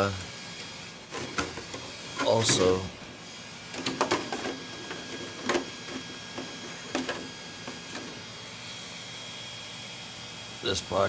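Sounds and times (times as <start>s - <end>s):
objects handled on a desk: 1.1s - 2.9s, 3.7s - 8.2s.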